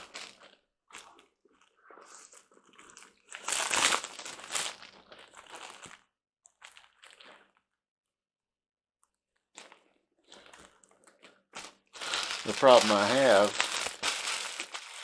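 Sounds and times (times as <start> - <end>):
packaging crinkling and rustling: 3.4 - 4.9, 11.6 - 15.0.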